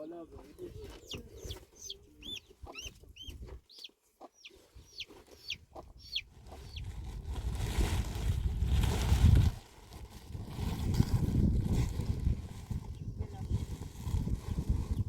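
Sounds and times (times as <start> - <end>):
birds chirping: 0.0 - 6.9
wind on microphone: 4.8 - 15.0.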